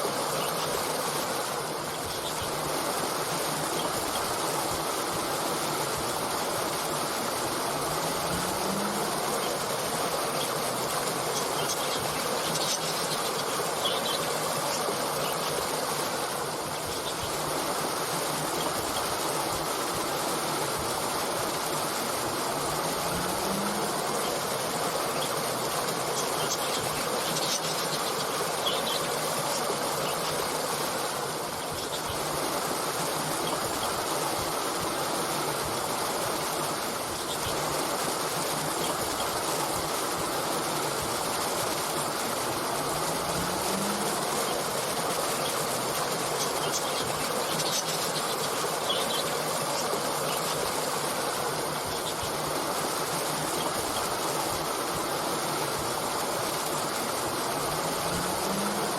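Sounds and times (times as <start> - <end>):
stream water flowing: 0.0 - 58.9
faint bird chirps: 23.1 - 30.5, 43.4 - 50.7.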